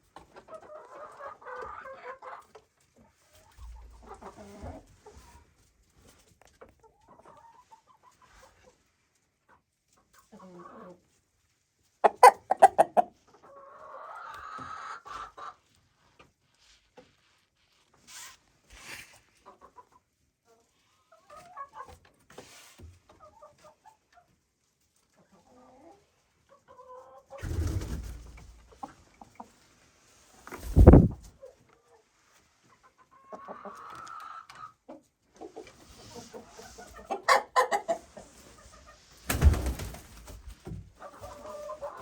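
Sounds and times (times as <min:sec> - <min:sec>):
chicken squawks: 0:12.0 - 0:13.1
chickens clucking: 0:12.0 - 0:15.6, 0:30.5 - 0:31.3, 0:32.8 - 0:39.0, 0:41.0 - 0:42.0.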